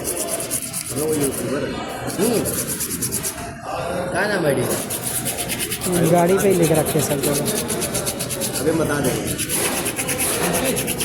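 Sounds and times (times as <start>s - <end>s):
men talking: 0.9s - 2.6s, 5.8s - 9.4s.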